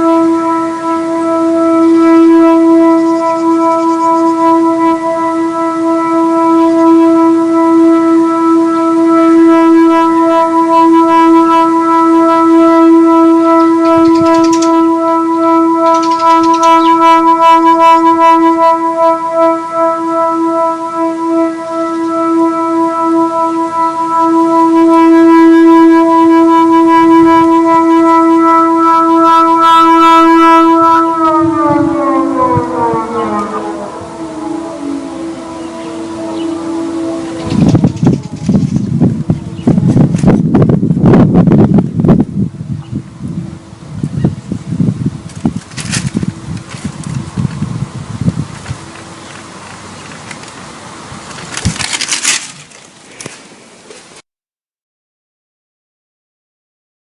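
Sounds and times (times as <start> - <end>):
air raid siren steady tone: 0.0 - 52.7.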